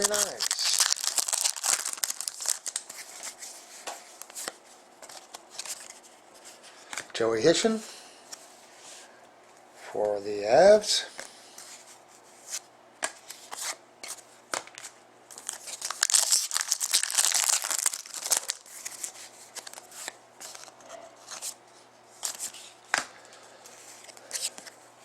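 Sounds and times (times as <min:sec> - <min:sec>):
wrapper tearing and crinkling: 0:00.0 - 0:03.0, 0:15.3 - 0:19.9.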